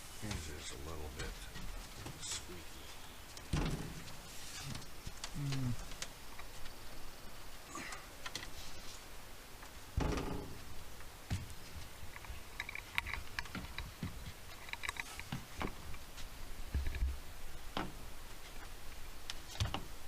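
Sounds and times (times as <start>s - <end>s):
heavy thump: 3.5s - 4.1s, 10.0s - 10.6s.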